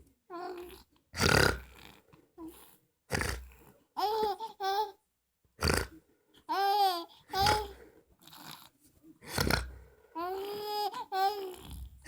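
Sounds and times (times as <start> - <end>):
loud snoring snorts: 1.1 - 2.1, 3.1 - 3.7, 5.6 - 6.0, 7.4 - 9.9, 11.5 - 12.0.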